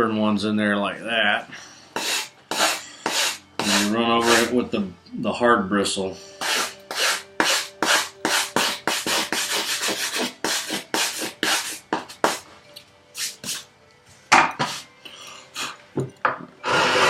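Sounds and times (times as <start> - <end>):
brush scratching metal file: 2.0 - 4.6, 6.4 - 12.4.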